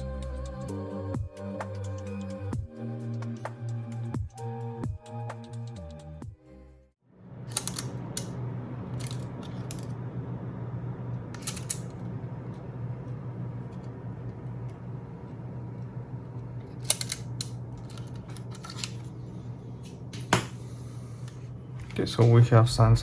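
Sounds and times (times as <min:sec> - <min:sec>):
steady low hum: 0:00.0 - 0:05.5, 0:07.1 - 0:23.0.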